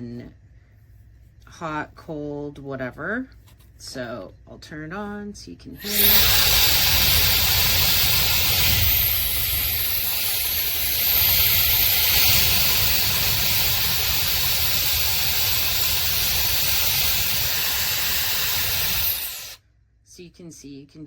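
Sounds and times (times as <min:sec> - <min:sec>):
hair dryer running: 0:05.8 - 0:19.6.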